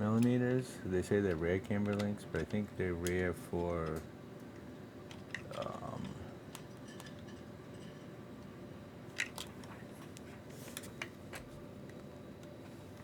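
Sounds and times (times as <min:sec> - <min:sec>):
small parts clicking: 0:01.3 - 0:04.0.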